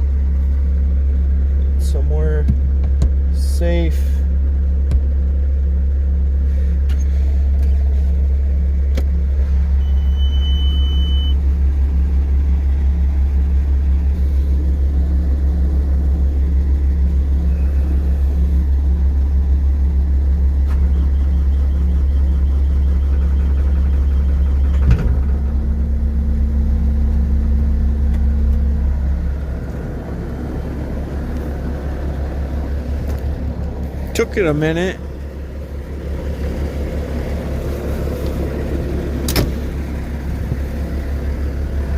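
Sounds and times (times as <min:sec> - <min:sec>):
diesel engine droning: 0:00.0 - 0:41.9
short high beep: 0:09.8 - 0:11.4.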